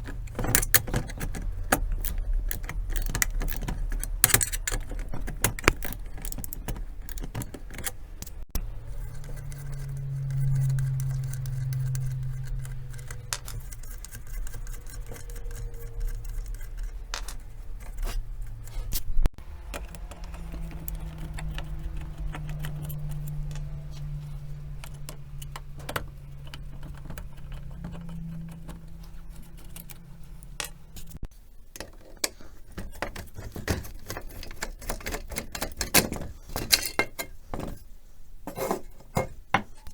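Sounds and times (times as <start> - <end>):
small metal parts clinking: 0.0 - 18.7, 31.8 - 37.8
low motor hum: 0.0 - 31.3.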